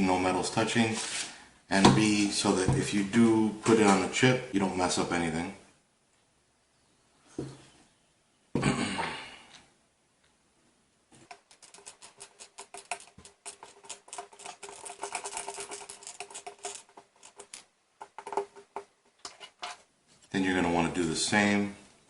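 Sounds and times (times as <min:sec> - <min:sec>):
rapid small clicks and ticks: 0:11.2 - 0:19.4
small parts clattering: 0:11.2 - 0:19.8.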